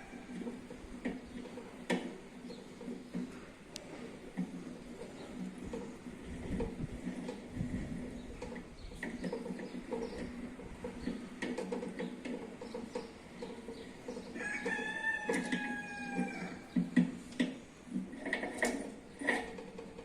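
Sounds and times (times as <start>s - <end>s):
rooster crowing: 14.4s - 16.7s.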